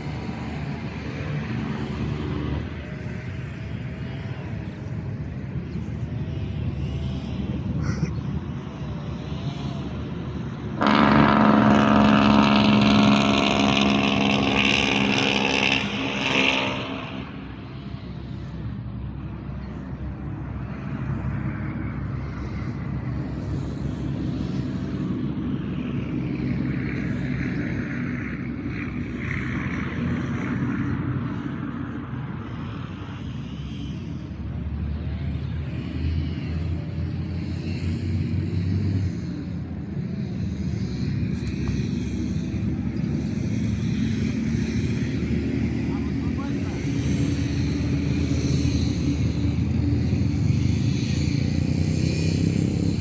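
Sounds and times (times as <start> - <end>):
vehicle engine rumbling: 0.0 - 53.0.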